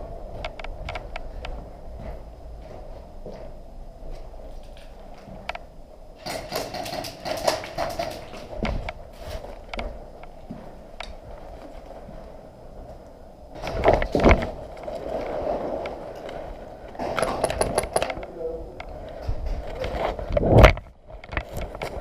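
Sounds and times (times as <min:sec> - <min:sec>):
rapid sharp clicks: 0:06.2 - 0:08.5.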